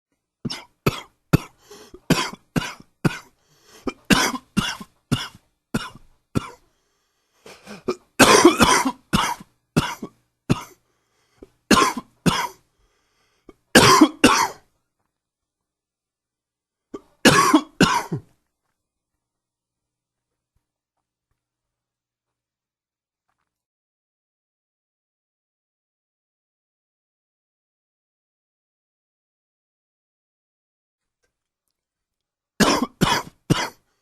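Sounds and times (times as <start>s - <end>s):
man coughing: 0.5s - 6.6s, 7.4s - 10.8s, 11.7s - 12.6s, 13.5s - 14.6s, 17.0s - 18.3s, 32.6s - 33.8s.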